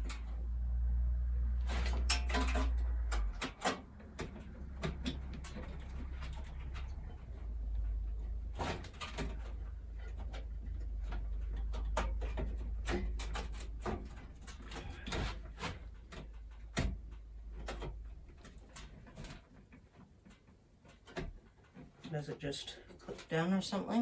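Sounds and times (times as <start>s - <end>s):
low rumble: 0.0s - 11.8s.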